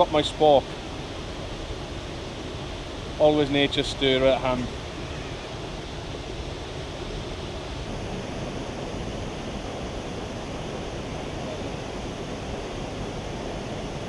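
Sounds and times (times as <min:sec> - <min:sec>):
rushing river water: 0:00.0 - 0:14.0.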